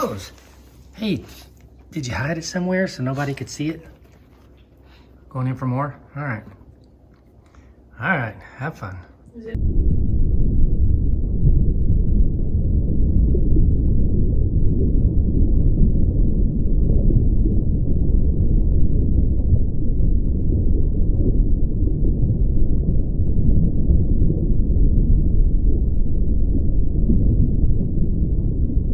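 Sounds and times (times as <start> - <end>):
loud low rumble: 9.5 - 28.9.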